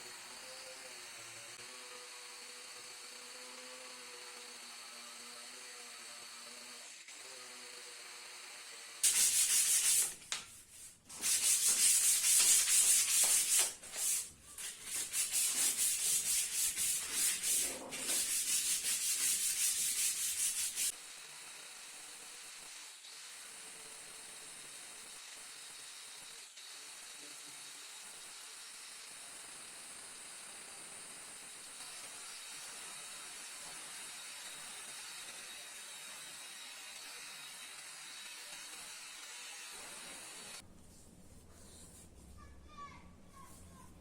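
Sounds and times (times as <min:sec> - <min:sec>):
sanding rusty metal: 0:09.0 - 0:10.2, 0:11.2 - 0:20.9.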